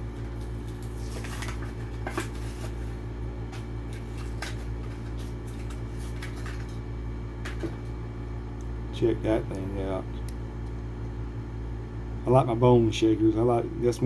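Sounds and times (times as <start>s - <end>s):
steady low hum: 0.0s - 14.0s
plastic packaging crinkling: 0.3s - 3.0s.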